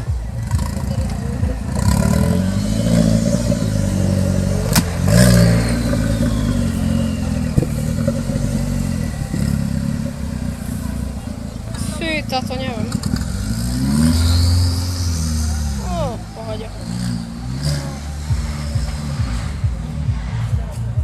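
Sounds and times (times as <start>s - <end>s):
off-road vehicle engine revving: 0.0s - 21.0s.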